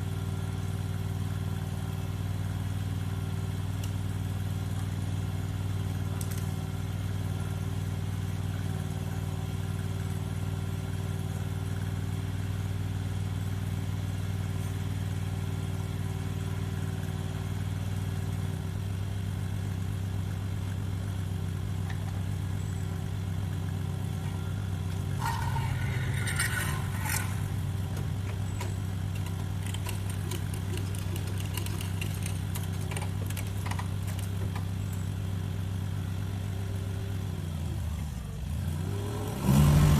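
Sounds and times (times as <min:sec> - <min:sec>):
small engine running: 0:04.2 - 0:39.9
scattered clatter: 0:25.0 - 0:34.9
metal clanking: 0:25.1 - 0:34.7.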